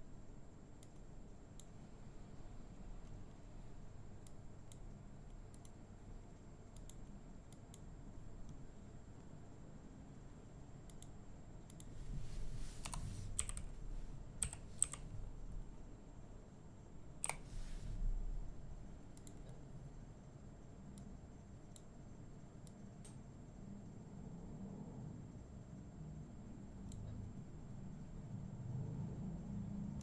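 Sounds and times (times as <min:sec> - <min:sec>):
keyboard and mouse clicking: 0:00.8 - 0:01.8, 0:04.2 - 0:05.8, 0:06.7 - 0:08.6, 0:10.8 - 0:11.9, 0:12.8 - 0:13.8, 0:14.4 - 0:15.2, 0:17.2 - 0:17.5, 0:19.1 - 0:19.6.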